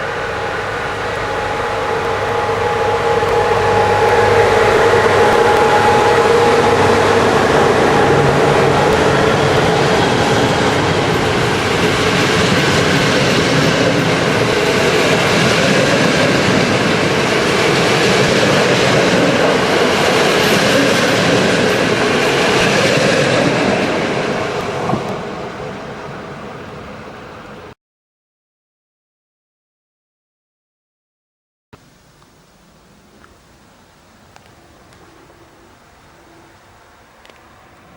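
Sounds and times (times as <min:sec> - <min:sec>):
train wheels rushing on rail: 0:00.0 - 0:27.8.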